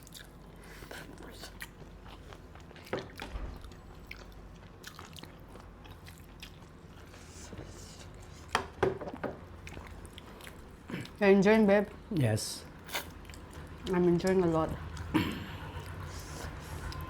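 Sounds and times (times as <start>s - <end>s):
quiet chewing and biting: 0.0s - 11.2s, 12.8s - 17.0s.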